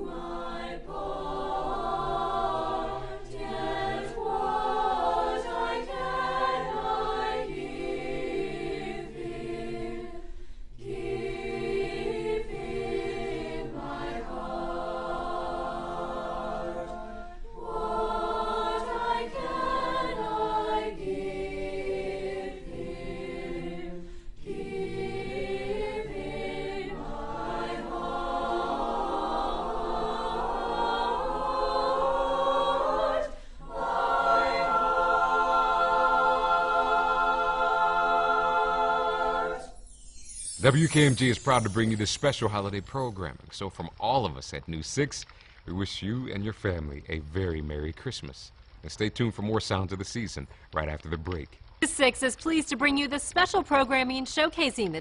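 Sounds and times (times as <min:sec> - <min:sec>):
choir singing in harmony: 0:00.0 - 0:43.1.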